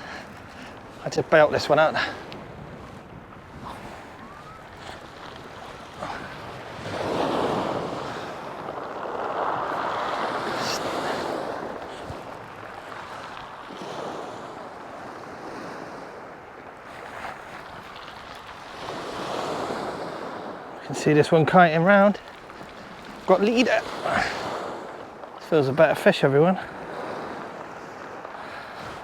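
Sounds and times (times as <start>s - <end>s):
wind on microphone: 0.0s - 21.3s
sea waves washing onto shore: 0.0s - 29.0s.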